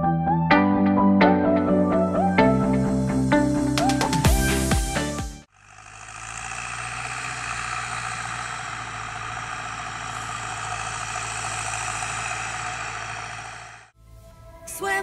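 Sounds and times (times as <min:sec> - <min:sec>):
harvest machinery running: 0:05.5 - 0:14.0.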